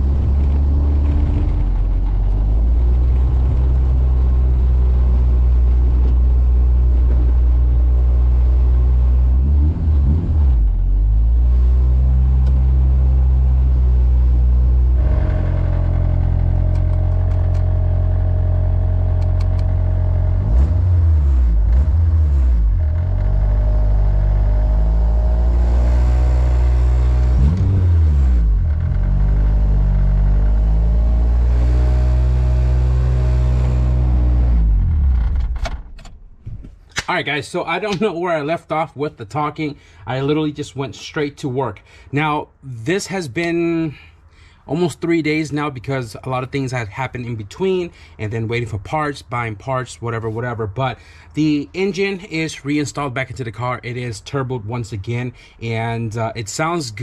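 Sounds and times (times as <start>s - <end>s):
car engine running: 0.0s - 36.0s.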